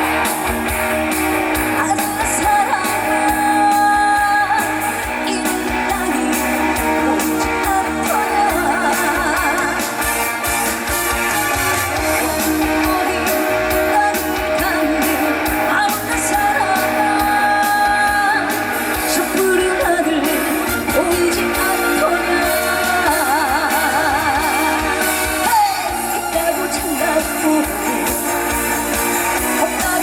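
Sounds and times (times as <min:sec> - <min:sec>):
woman singing with vibrato: 0:00.0 - 0:11.0, 0:11.9 - 0:30.0
band accompaniment: 0:00.0 - 0:30.0.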